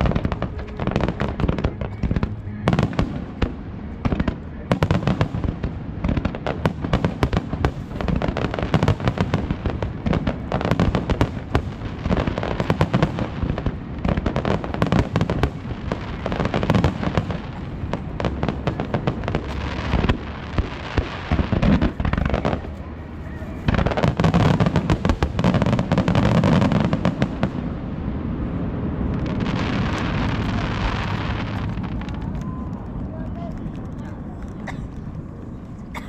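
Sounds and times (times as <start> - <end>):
fireworks bursting and crackling: 0.0 - 36.0.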